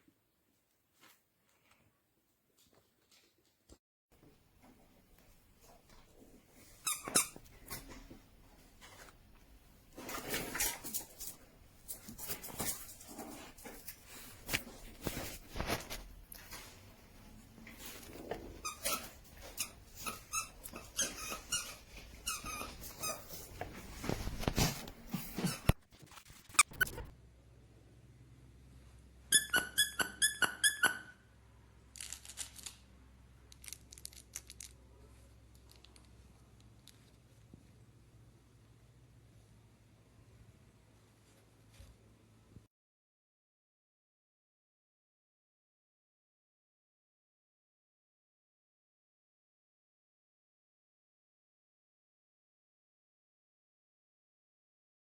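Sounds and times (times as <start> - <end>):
dog chewing a squeaky toy: 6.8 - 7.4, 18.6 - 23.4, 29.3 - 31.1
soft clicks and rustles: 33.5 - 37.8.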